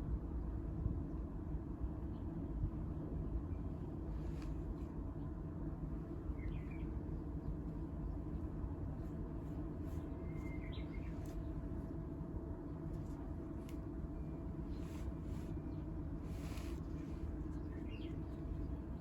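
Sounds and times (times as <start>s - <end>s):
low rumbling outdoor noise: 0.0s - 19.0s
faint bird chirps: 9.9s - 11.6s, 14.1s - 19.0s.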